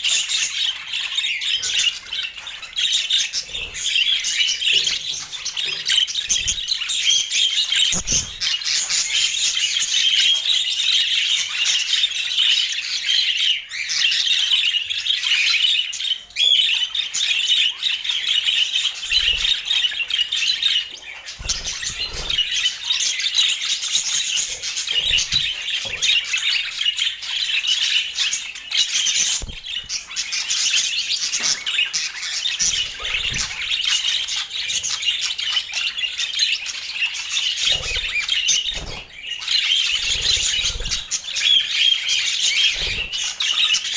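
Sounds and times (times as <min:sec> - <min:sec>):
budgerigars chattering: 0:00.0 - 0:43.9.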